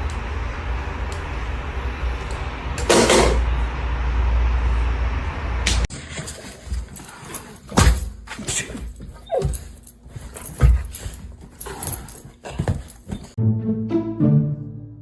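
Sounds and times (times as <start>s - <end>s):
dog whining: 9.1s - 9.9s
music: 13.4s - 15.0s.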